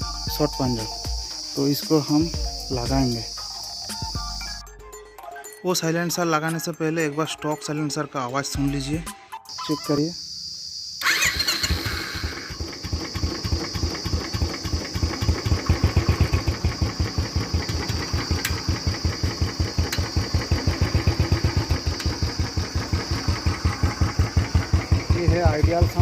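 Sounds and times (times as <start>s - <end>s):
motorcycle engine idling: 0.0s - 4.7s, 11.0s - 26.0s.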